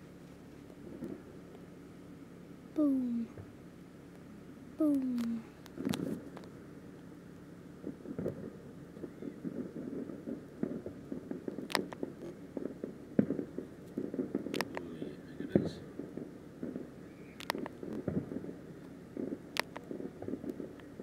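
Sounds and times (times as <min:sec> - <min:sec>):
fireworks cracks and crackling: 0:00.7 - 0:01.4, 0:07.8 - 0:21.0
distant fireworks booming: 0:00.8 - 0:01.5, 0:07.6 - 0:21.0.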